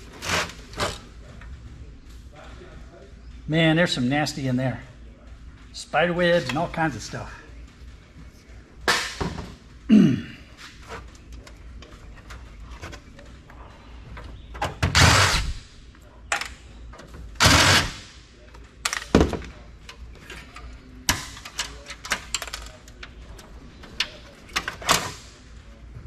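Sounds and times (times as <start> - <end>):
computer parts clattering: 18.6 - 25.3.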